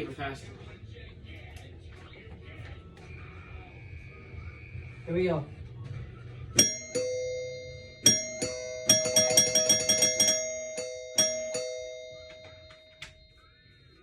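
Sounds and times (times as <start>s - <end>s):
two-note doorbell chime: 6.6s - 14.0s.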